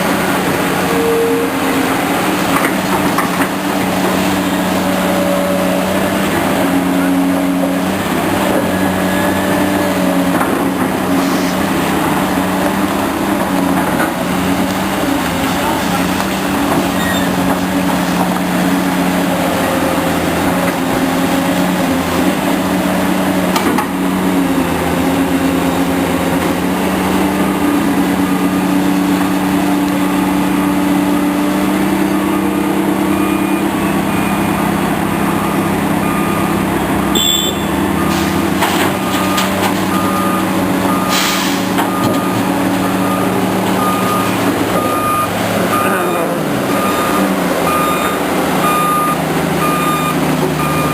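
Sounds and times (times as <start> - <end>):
heavy machine engine under load: 0.0 - 50.9
backup alarm beeping: 35.3 - 38.2, 41.9 - 46.0, 46.7 - 50.9.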